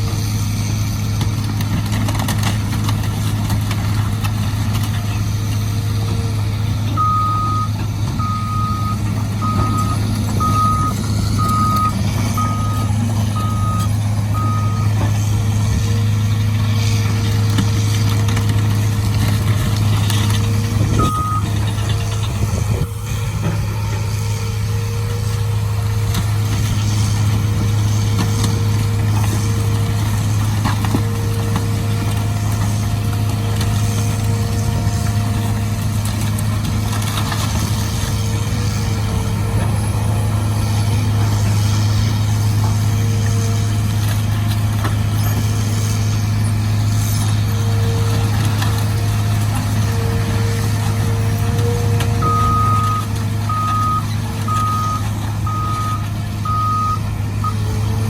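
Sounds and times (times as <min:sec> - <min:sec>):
excavator diesel engine running: 0:00.0 - 0:58.0
reversing alarm beeping: 0:07.0 - 0:15.1, 0:21.0 - 0:21.6, 0:52.2 - 0:57.8.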